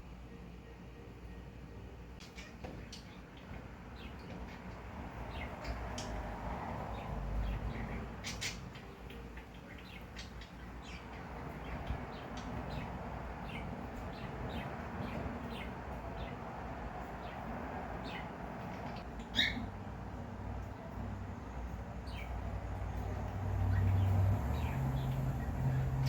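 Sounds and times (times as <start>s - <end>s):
low room hum: 0.0s - 26.0s
cockatiels chirping: 18.8s - 19.7s.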